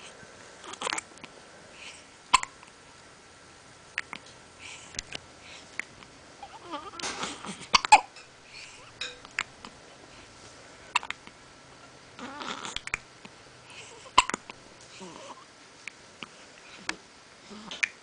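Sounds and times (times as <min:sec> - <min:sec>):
person hiccuping: 0:02.3 - 0:02.6.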